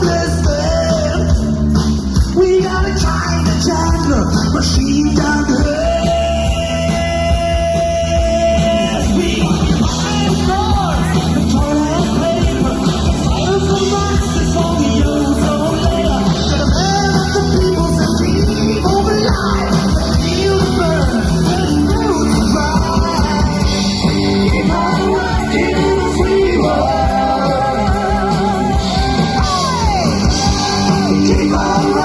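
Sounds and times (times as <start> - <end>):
person singing: 0.0 - 1.6, 2.3 - 32.0
live rock band playing: 0.0 - 32.0.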